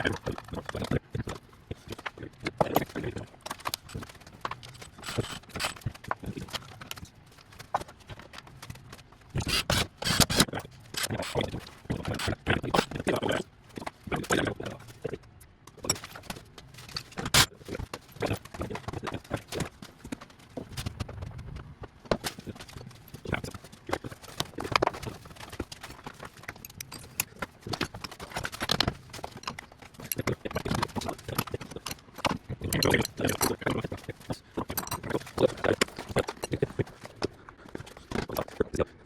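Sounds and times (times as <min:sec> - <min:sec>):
clicks and knocks from hand work: 0:00.0 - 0:13.0.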